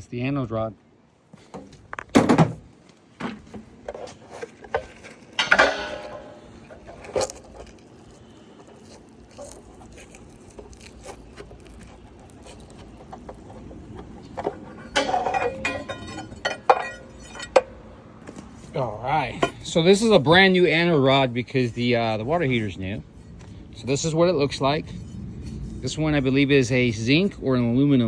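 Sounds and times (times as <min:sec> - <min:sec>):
metallic clatter: 0:04.4 - 0:07.8, 0:12.5 - 0:20.1
metal rod knocking: 0:05.4 - 0:06.4, 0:14.4 - 0:17.8
metallic clink: 0:14.8 - 0:17.7.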